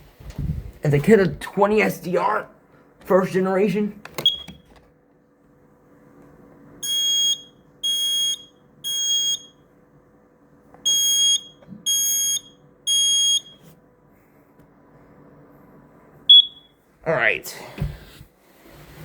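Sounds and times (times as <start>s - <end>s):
smoke alarm beeping: 4.2s - 4.6s, 6.8s - 9.6s, 10.8s - 13.7s, 16.3s - 16.8s.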